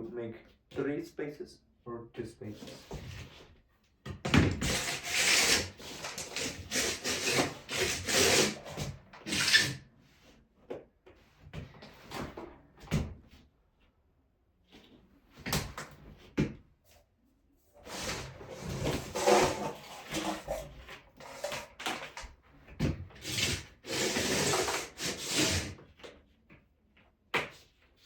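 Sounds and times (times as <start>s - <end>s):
cable rubbing and scraping on plastic: 4.6s - 10.4s, 17.8s - 26.1s.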